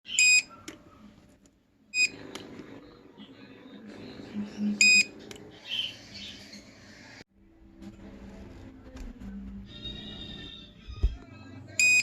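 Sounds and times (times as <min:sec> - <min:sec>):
short electronic beeps: 0:11.8 - 0:12.0.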